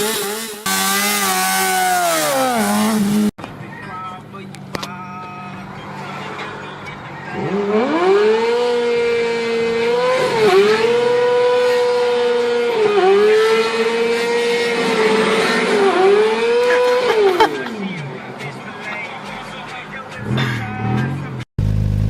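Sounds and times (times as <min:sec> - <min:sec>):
motorcycle engine revving: 0:00.0 - 0:03.4, 0:07.3 - 0:17.3, 0:20.2 - 0:22.0.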